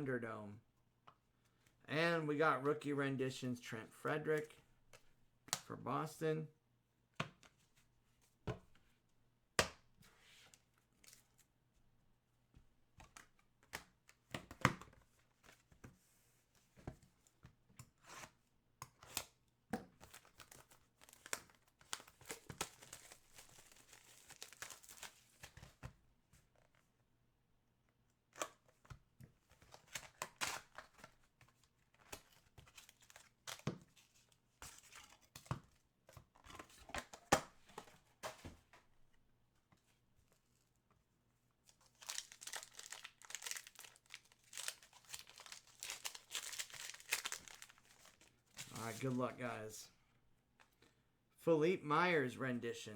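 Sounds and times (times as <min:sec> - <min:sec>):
foil wrappers crinkling: 0:20.1 - 0:25.5, 0:41.8 - 0:49.1
card packs tearing open: 0:20.1 - 0:25.6, 0:41.8 - 0:49.1.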